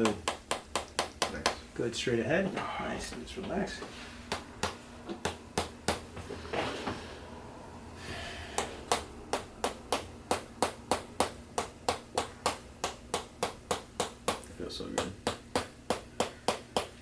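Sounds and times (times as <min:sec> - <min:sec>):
sharp taps: 0:04.3 - 0:06.2, 0:08.5 - 0:17.0.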